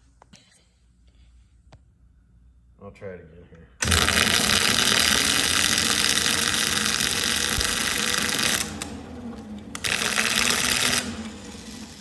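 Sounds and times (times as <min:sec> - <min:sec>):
drill press motor crackling buzz: 0:03.8 - 0:12.0.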